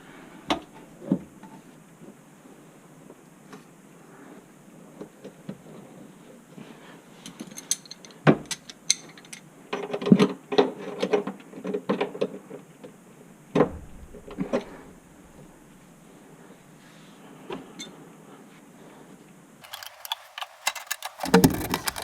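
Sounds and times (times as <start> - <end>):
loud knocks: 13.6 - 16.0
mechanical clicking and rattling: 19.6 - 22.0.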